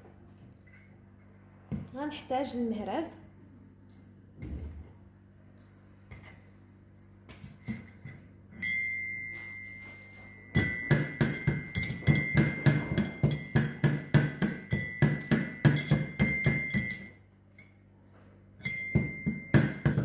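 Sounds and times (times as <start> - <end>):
metal mortar and pestle pounding: 10.5 - 17.2, 18.6 - 20.0.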